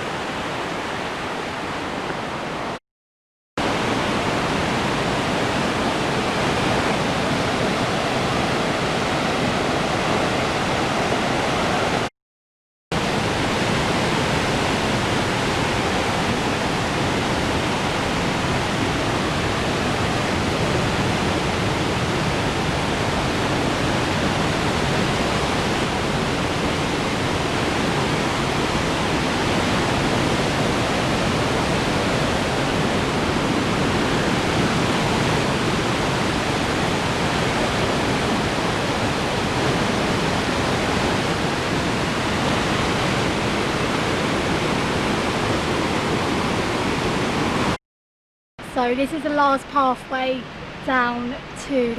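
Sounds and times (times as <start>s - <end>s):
waterfall rushing: 3.6s - 12.1s, 13.0s - 47.8s.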